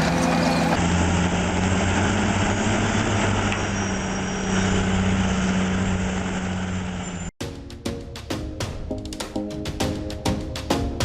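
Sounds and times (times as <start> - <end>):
heavy machine engine droning: 0.0 - 7.4.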